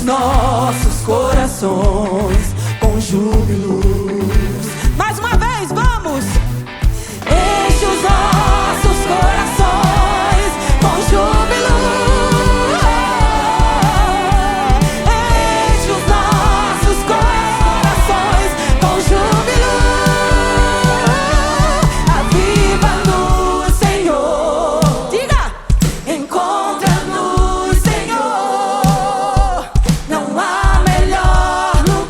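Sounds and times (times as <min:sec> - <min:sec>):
band playing gospel music: 0:05.9 - 0:32.0
person singing: 0:07.2 - 0:32.0.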